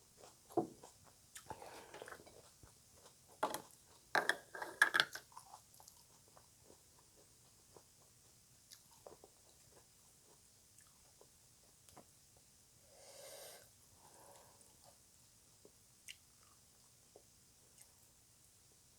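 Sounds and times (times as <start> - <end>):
crunchy chewing: 0.0 - 12.1.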